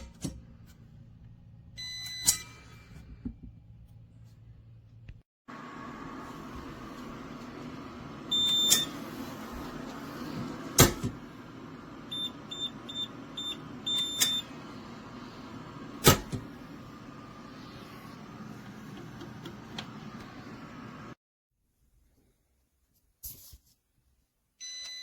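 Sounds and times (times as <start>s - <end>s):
steady hum: 5.5s - 21.2s
electronic keypad beeping: 8.3s - 9.0s, 12.1s - 14.5s
safe mechanism clunk: 8.3s - 11.4s, 12.1s - 14.8s, 15.5s - 21.1s.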